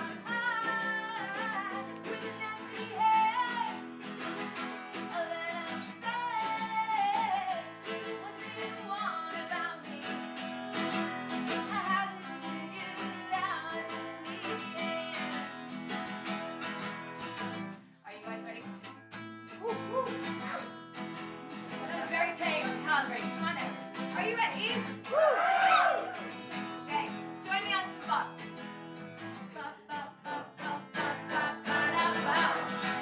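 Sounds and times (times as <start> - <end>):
person singing: 0.0 - 3.8, 29.6 - 33.0
strummed acoustic guitar: 0.0 - 33.0.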